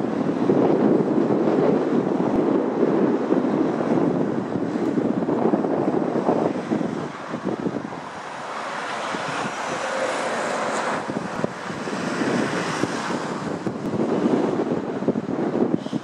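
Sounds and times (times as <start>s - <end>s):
jet engines rushing: 0.0s - 16.0s
wind buffeting microphone: 0.0s - 16.0s.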